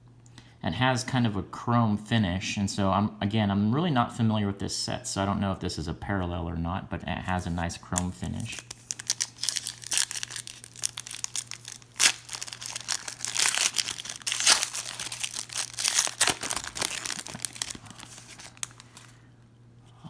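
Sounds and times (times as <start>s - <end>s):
foil wrapper crinkling and tearing: 7.9s - 19.2s.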